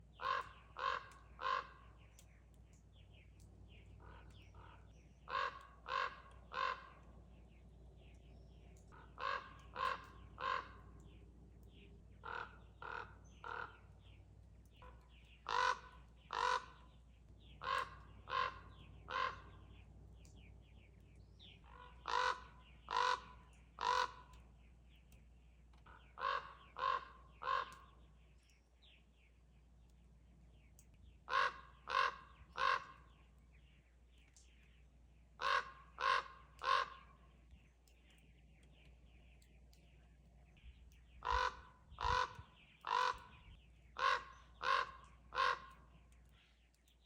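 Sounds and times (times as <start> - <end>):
small birds chirping: 0.0 - 47.0
crow cawing: 0.2 - 1.9, 4.0 - 7.1, 8.9 - 11.0, 12.2 - 13.9, 14.8 - 16.9, 17.6 - 19.6, 21.6 - 24.4, 25.9 - 27.9, 31.3 - 33.2, 35.4 - 37.2, 41.2 - 43.4, 44.0 - 45.8.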